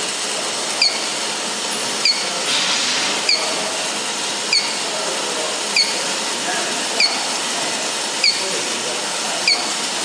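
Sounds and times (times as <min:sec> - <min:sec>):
machinery hissing: 0:00.0 - 0:10.0
short high squeak: 0:02.0 - 0:02.4, 0:03.2 - 0:03.5, 0:04.5 - 0:04.8, 0:05.8 - 0:06.0.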